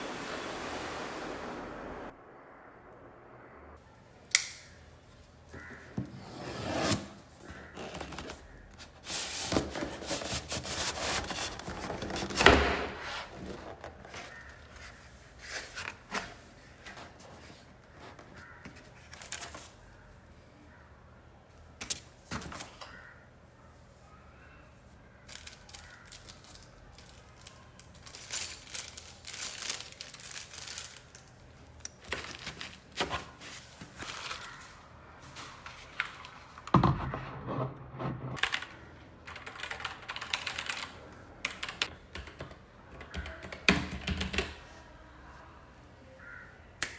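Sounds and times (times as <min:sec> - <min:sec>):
wrapping tearing and crinkling: 0:25.3 - 0:34.8.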